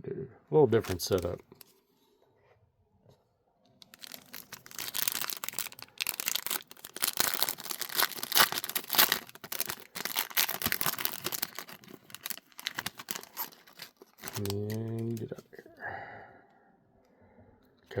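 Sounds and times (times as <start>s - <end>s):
wrapper tearing and crinkling: 0.8s - 1.7s, 3.8s - 15.3s.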